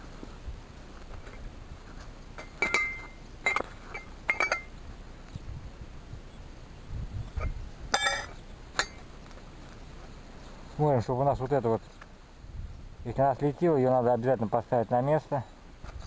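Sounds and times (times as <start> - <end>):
metal parts clinking: 2.4 - 4.7, 8.0 - 9.0.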